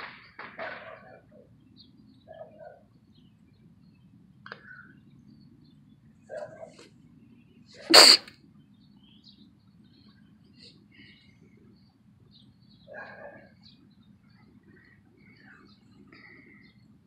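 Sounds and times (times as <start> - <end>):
person sneezing: 7.8 - 8.3.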